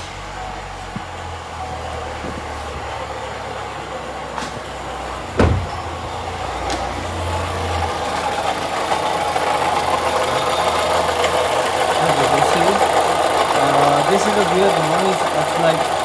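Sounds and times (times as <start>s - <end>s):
car engine running: 0.0s - 16.0s
sharp thump: 5.4s - 5.8s.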